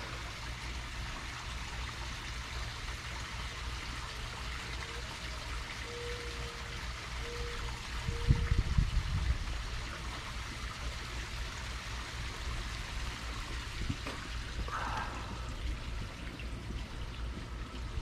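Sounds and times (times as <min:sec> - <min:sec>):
pond water trickling: 0:00.0 - 0:18.0
low hum: 0:13.8 - 0:18.0.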